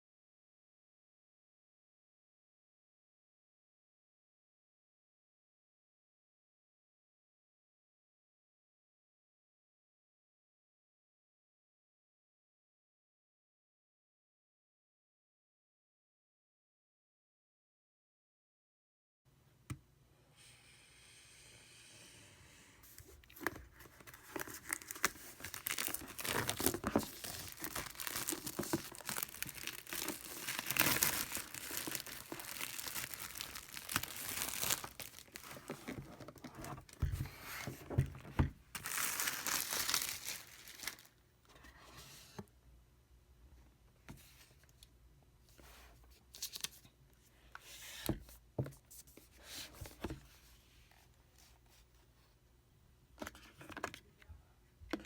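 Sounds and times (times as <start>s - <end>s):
packaging tearing and crinkling: 23.8s - 36.1s, 38.8s - 41.1s.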